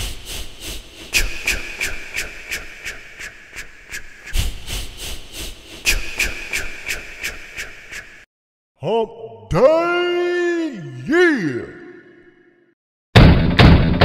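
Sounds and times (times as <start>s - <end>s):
rhythmic hissing strokes: 0.0s - 8.2s.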